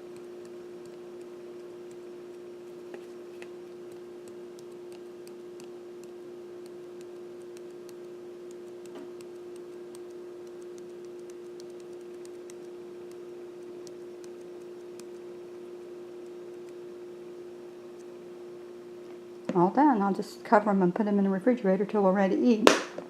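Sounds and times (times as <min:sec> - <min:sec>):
shaker light ticks: 0:00.0 - 0:16.9.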